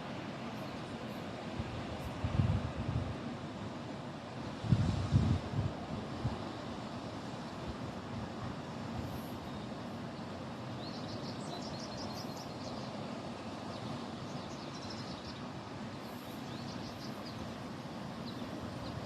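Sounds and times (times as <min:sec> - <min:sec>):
bird chirping: 0:10.8 - 0:12.9.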